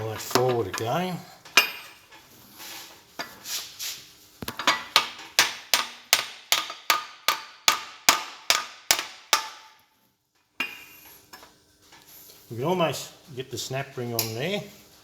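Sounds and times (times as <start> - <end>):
hammer tapping on steel punch: 4.4 - 9.7.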